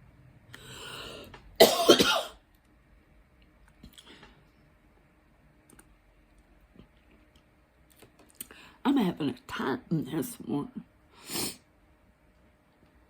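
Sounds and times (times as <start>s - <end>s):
person breathing in: 0.6s - 1.4s
person clearing throat: 1.6s - 2.4s.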